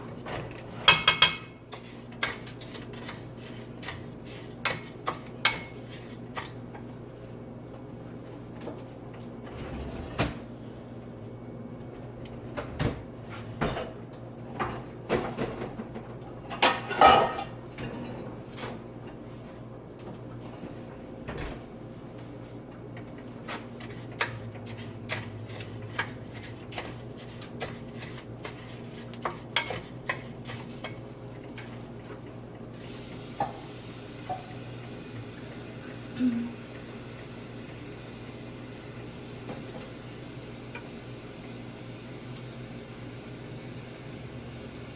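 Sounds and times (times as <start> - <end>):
spoon scraping and knocking a pot: 0.8 - 6.6, 23.5 - 31.0.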